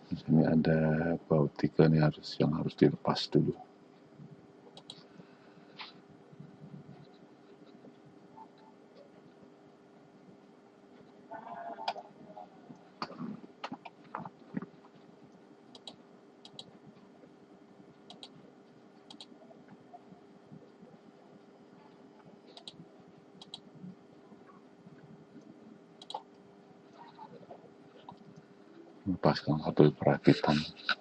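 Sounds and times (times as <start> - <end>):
faint steady hum: 0.0 - 31.0.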